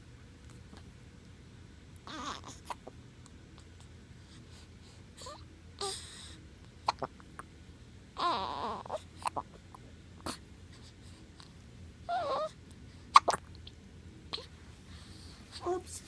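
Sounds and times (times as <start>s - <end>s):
baby whimpering: 2.1s - 2.9s, 8.2s - 9.6s, 12.1s - 12.6s
baby hiccuping: 6.8s - 7.2s, 8.2s - 9.5s, 13.1s - 13.5s.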